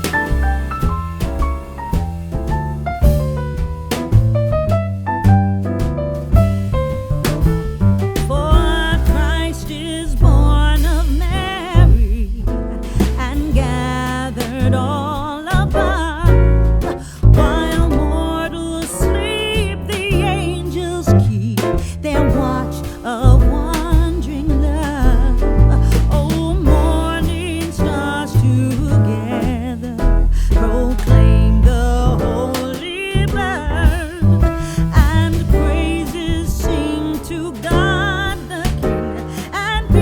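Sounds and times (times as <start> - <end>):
song with singing over a beat: 30.6 - 40.0.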